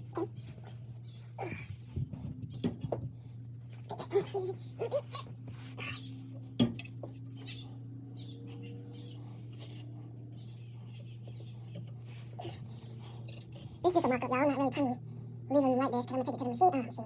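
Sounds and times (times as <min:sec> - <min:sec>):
steady low hum: 0:00.0 - 0:17.0
metal pipes clinking and knocking: 0:06.5 - 0:07.4.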